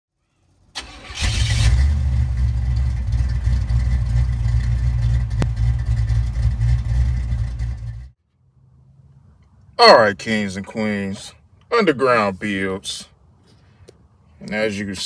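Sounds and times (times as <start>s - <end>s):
car engine starting and running: 0.7s - 8.2s.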